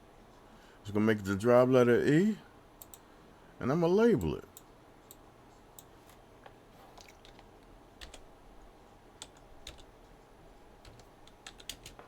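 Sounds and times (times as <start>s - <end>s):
computer keyboard keystrokes: 8.0s - 8.2s, 9.2s - 9.9s, 10.8s - 12.0s.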